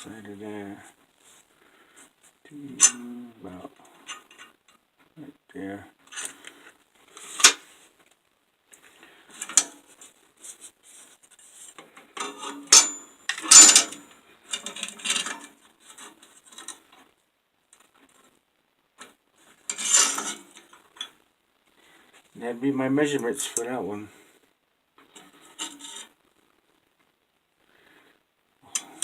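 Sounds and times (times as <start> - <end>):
steel and tools clinking: 12.2 - 15.5, 19.7 - 20.4.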